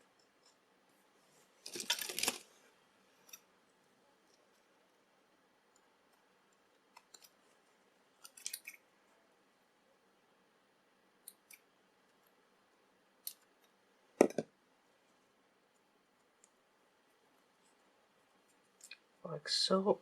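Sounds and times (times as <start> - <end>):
plastic film crinkling: 1.6 - 2.6.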